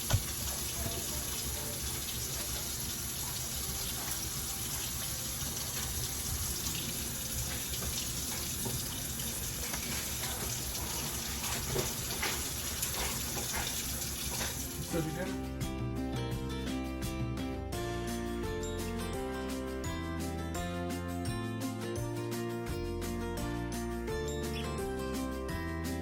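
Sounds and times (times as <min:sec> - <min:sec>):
tap running into a sink: 0:00.0 - 0:15.3.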